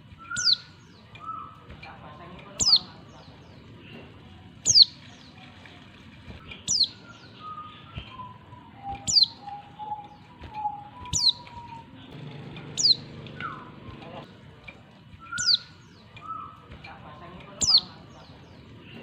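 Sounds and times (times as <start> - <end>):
bird high down-sweeping calls: 0.2 - 1.6, 6.4 - 11.9.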